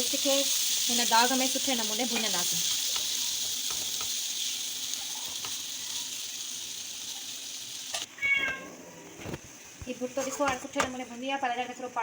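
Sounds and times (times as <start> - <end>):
paste sizzling in oil: 0.0 - 8.2.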